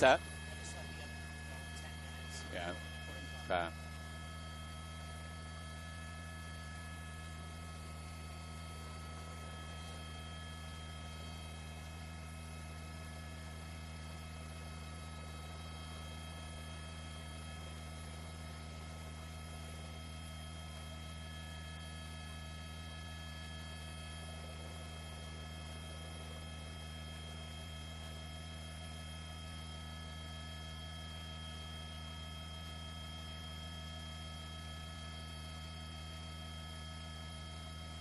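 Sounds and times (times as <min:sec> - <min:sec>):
steady hum: 0:00.0 - 0:38.0.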